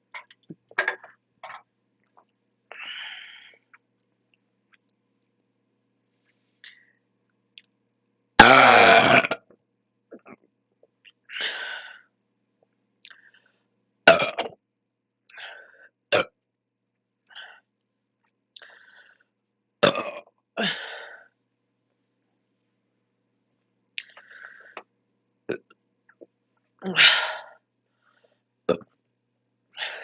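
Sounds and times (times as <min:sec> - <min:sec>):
person belching: 0:08.4 - 0:09.5, 0:14.1 - 0:14.6, 0:19.8 - 0:20.3, 0:28.7 - 0:28.9.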